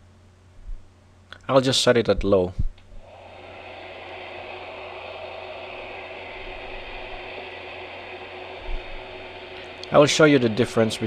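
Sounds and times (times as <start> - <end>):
faint low hum: 0.0 - 11.0
heat gun blowing air: 3.0 - 11.0.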